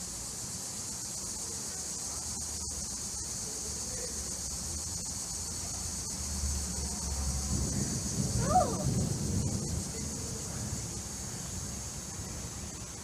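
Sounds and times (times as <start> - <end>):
night insects chorus: 0.0 - 13.0.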